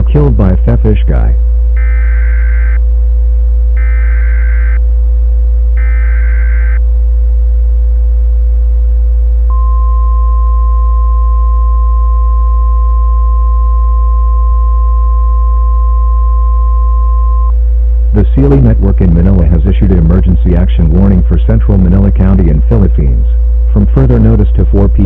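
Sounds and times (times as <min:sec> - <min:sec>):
loud low hum: 0:00.0 - 0:25.0
steady high alert tone: 0:03.8 - 0:04.8
warbling data bursts: 0:03.8 - 0:04.8.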